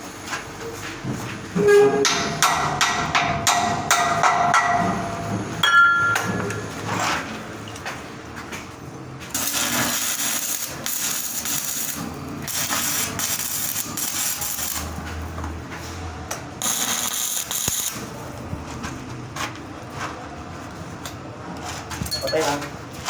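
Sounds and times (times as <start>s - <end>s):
welding arc crackling: 9.3s - 15.3s, 16.6s - 18.5s.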